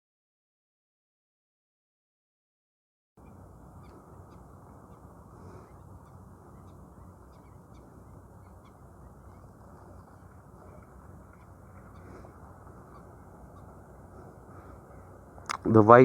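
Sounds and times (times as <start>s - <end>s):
birds chirping: 3.2s - 16.0s
low background rumble: 3.2s - 16.0s.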